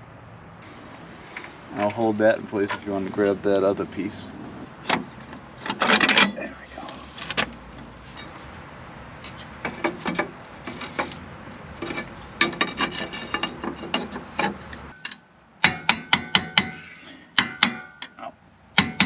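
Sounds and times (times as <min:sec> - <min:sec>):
metal parts scraping and knocking: 0:01.2 - 0:03.2, 0:04.7 - 0:16.8.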